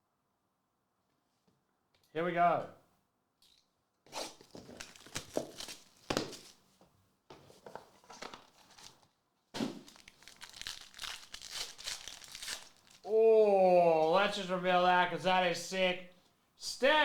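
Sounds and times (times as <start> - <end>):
plastic wrappers crinkling: 4.2 - 6.6, 8.0 - 13.1.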